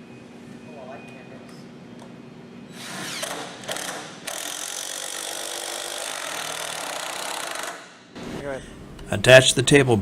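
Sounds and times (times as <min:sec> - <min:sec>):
ratcheting tool whirring: 0:02.8 - 0:08.0.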